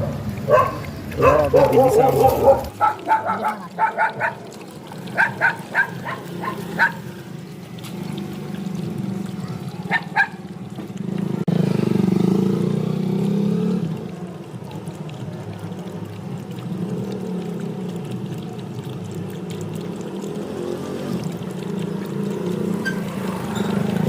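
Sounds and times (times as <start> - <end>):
puppy yipping: 0.0 - 4.5, 5.2 - 7.1, 9.9 - 10.4.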